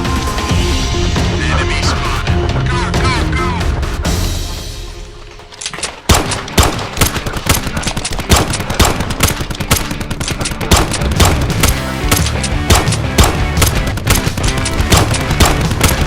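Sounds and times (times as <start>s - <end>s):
gunfire sound effects: 5.5s - 16.0s.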